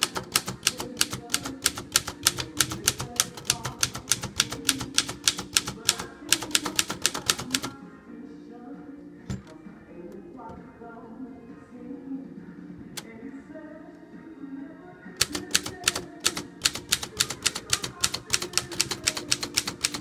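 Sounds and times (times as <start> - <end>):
typewriter typing: 0.0 - 7.8, 15.2 - 20.0.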